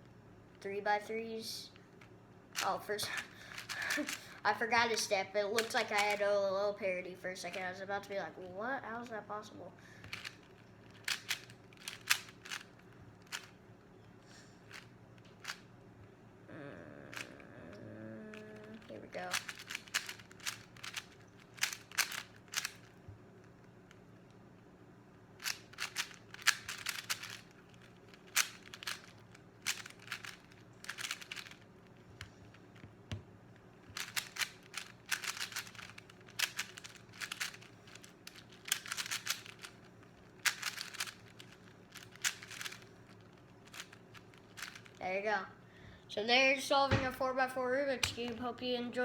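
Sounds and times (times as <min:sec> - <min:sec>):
faint steady hum: 0:00.0 - 0:49.0
puzzle cube clicking turns: 0:03.5 - 0:04.2, 0:05.6 - 0:06.2, 0:10.0 - 0:13.6, 0:14.7 - 0:15.6, 0:18.3 - 0:22.9, 0:25.4 - 0:33.2, 0:33.8 - 0:45.0.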